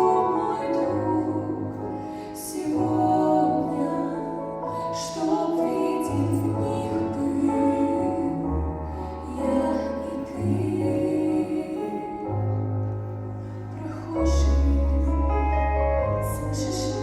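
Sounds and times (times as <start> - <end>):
slow music with bass and chords: 0.0 - 17.0
person singing: 13.4 - 17.0.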